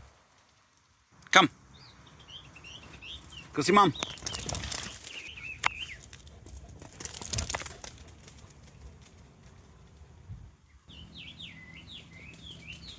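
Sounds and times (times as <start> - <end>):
rustling and crackling: 0.0 - 1.2, 2.8 - 10.6
birds chirping: 1.3 - 7.6, 8.2 - 12.9.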